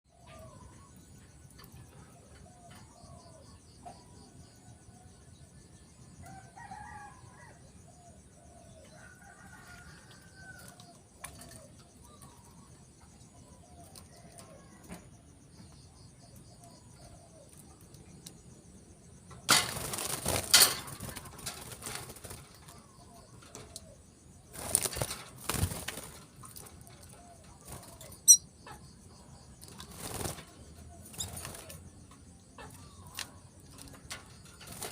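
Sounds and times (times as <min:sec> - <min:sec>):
bird wings fluttering: 0:19.5 - 0:23.0, 0:24.5 - 0:27.0, 0:29.7 - 0:31.8, 0:33.1 - 0:34.9.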